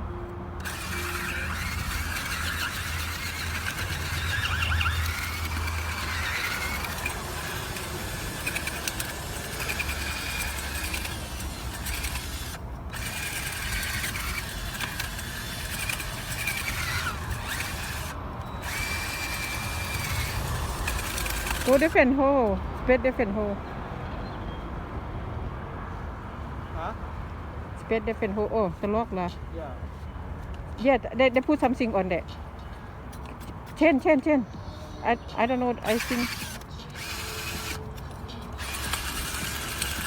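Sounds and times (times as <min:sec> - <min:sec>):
power drill whining: 0:00.6 - 0:22.0, 0:35.8 - 0:40.0.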